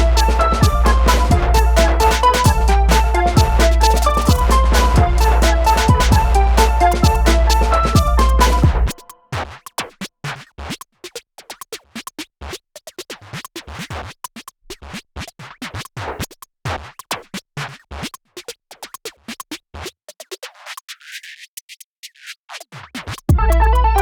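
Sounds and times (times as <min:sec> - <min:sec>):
stuttering electronic music: 0:00.0 - 0:09.2, 0:23.4 - 0:24.0.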